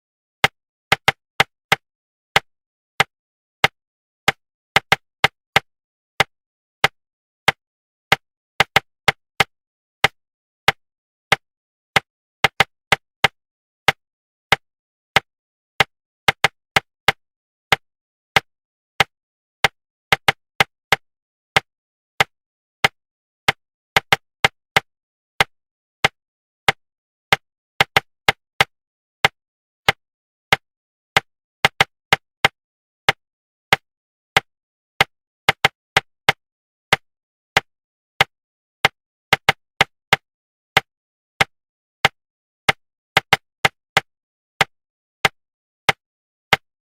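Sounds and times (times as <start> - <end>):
sharp knocks tapped in rhythm: 2.4 - 11.4, 12.0 - 14.6, 21.6 - 30.6, 31.2 - 33.8, 34.4 - 37.0, 37.6 - 40.2, 40.8 - 46.6.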